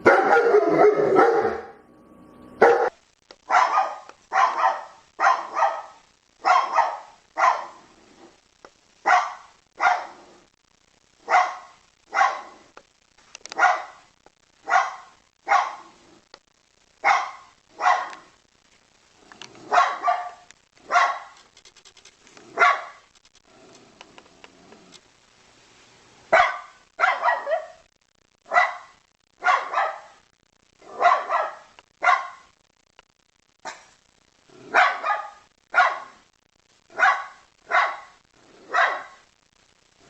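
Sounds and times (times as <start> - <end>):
dog barking: 0.0 - 1.8, 2.6 - 7.9, 9.0 - 10.3, 11.2 - 12.7, 13.5 - 16.0, 17.0 - 18.4, 19.6 - 21.4, 22.5 - 23.1, 26.3 - 27.9, 28.5 - 30.2, 30.8 - 32.5, 34.6 - 36.2, 36.9 - 39.3.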